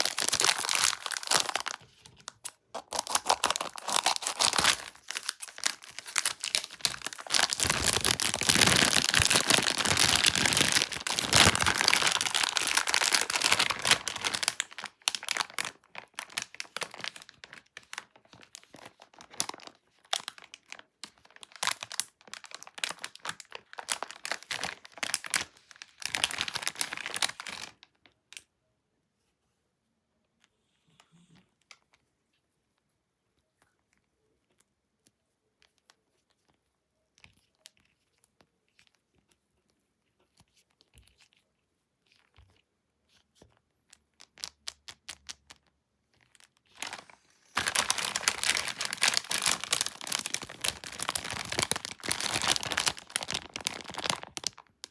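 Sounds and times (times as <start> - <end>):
plastic packaging crinkling: 0.0 - 27.9, 44.2 - 45.6, 46.2 - 54.9.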